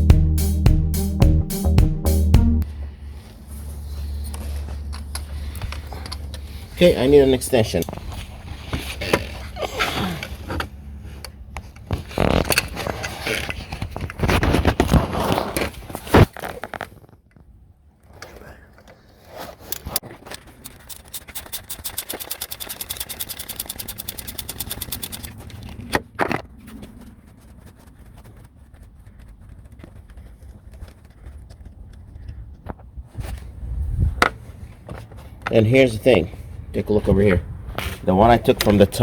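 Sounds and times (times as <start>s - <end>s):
socket ratchet clicking: 20.6s - 25.3s.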